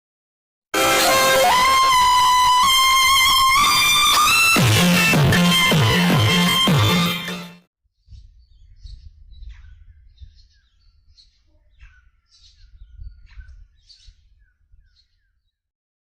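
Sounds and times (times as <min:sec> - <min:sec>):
small birds chirping: 0:08.0 - 0:15.6.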